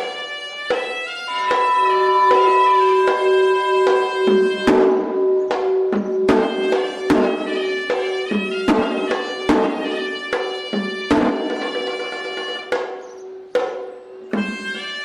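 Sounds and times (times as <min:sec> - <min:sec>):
reedy shawm melody: 0:00.0 - 0:15.0
sharp drum strokes: 0:01.0 - 0:14.6
temple bell ringing: 0:01.2 - 0:12.6.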